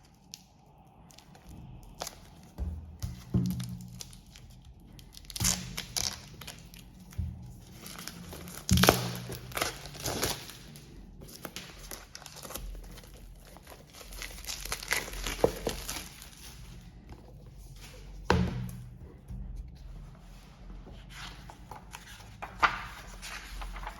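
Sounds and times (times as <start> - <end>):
wrappers crinkling and tearing: 3.3 - 16.8.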